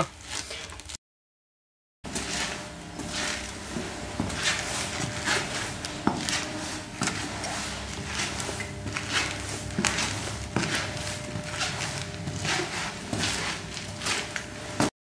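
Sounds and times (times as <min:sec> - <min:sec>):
leather shoes squeaking: 0:04.2 - 0:14.4.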